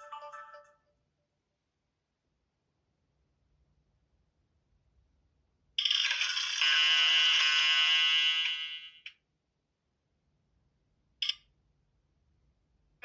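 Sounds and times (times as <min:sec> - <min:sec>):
phone ringtone: 0:05.8 - 0:09.1.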